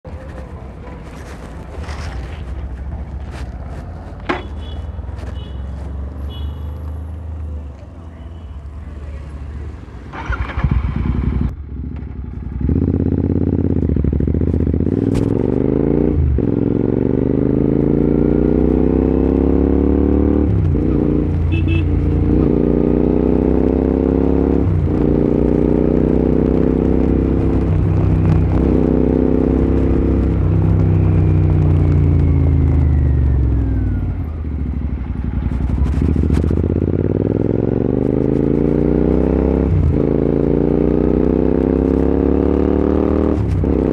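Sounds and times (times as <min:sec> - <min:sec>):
motorcycle engine accelerating: 0:09.3 - 0:43.9.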